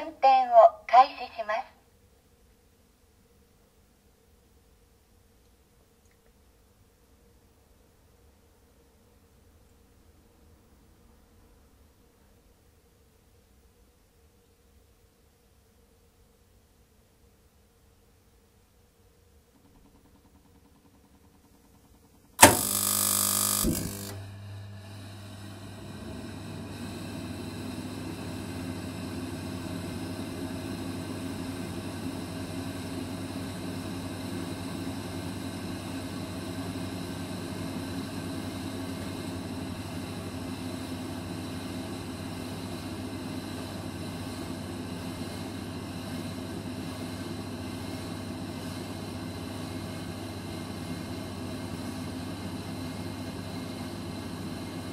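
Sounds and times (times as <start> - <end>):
heater fan humming: 19.4 - 54.9
heater igniting burst: 22.4 - 28.8.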